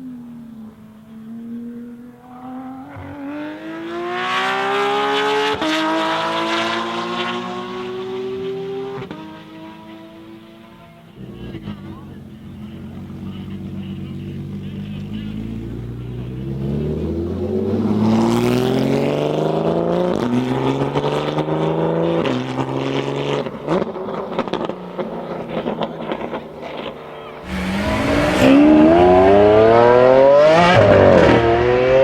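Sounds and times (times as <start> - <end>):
sports car engine accelerating: 27.4 - 32.0.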